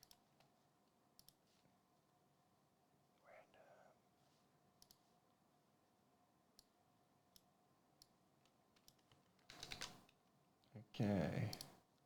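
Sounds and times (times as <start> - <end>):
faint clicks: 4.8 - 5.0.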